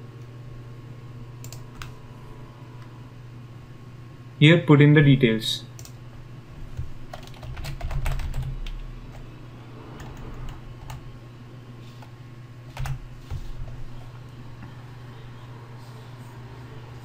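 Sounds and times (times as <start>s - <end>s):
low steady hum: 0.0s - 17.0s
keyboard typing: 1.4s - 2.0s, 6.7s - 9.3s, 10.0s - 11.0s, 12.7s - 14.1s.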